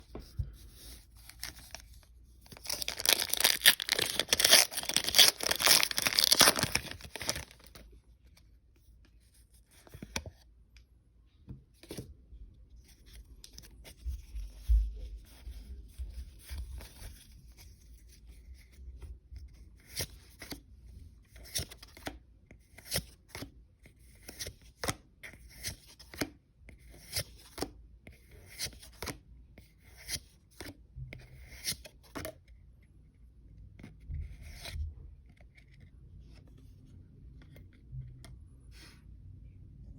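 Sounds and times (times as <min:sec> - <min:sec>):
cards clicking and rustling: 0:00.7 - 0:07.9
foil wrapper tearing: 0:02.5 - 0:07.7.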